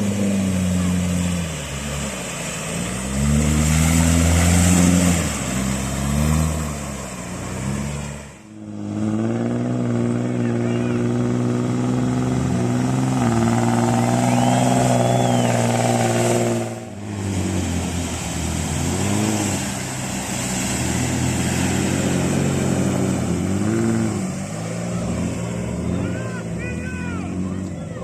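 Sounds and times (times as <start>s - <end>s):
off-road engine revving: 0.0s - 28.0s.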